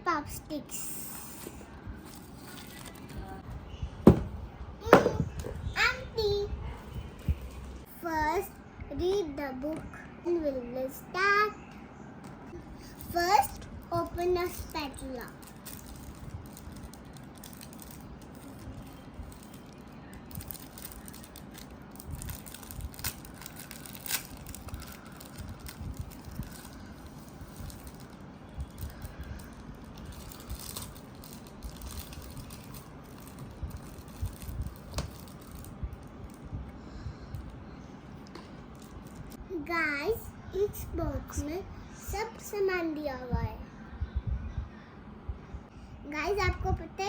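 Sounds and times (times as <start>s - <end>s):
plastic packaging crinkling: 2.0s - 3.4s, 14.4s - 36.4s.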